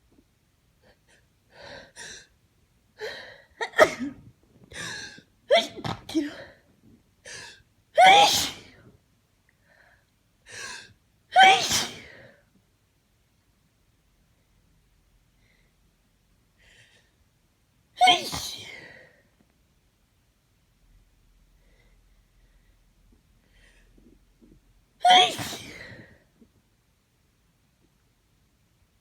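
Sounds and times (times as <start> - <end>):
person sneezing loudly: 3.6 - 6.5, 8.0 - 8.9, 11.4 - 12.3, 18.0 - 19.0, 25.0 - 26.2.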